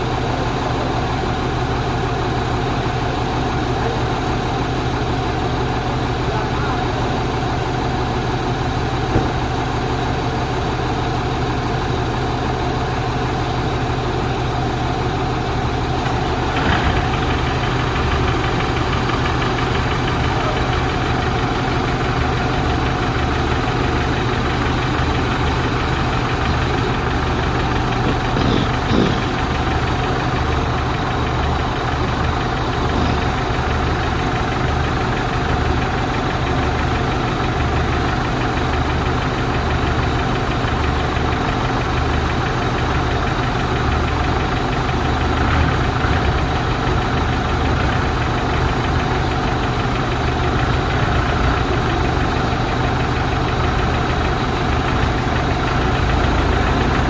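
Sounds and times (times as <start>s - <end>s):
truck engine idling: 0.0s - 57.0s.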